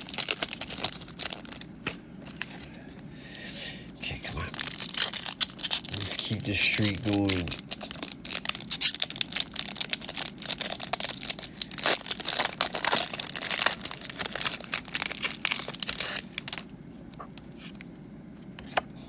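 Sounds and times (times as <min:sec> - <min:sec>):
foil wrapper crinkling: 0:00.0 - 0:02.6, 0:04.2 - 0:16.7.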